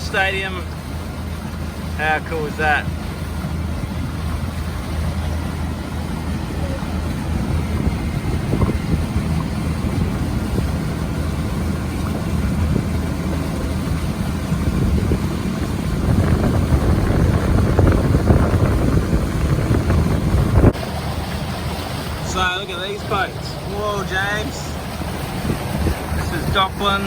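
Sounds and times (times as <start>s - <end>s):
motorboat engine running: 0.0s - 27.0s
wind noise on microphone: 3.4s - 22.2s, 24.2s - 27.0s.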